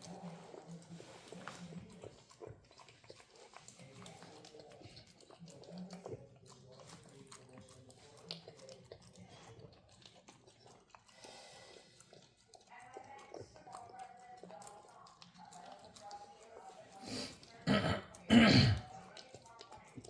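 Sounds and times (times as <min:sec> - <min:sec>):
puppy chewing: 0:00.0 - 0:20.0.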